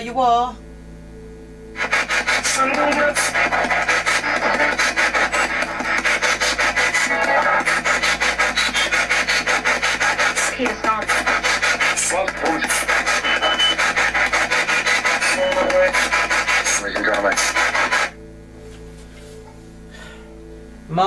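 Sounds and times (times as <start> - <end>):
choppy radio static: 1.7 - 18.4
snatches of radio broadcast: 1.8 - 18.2.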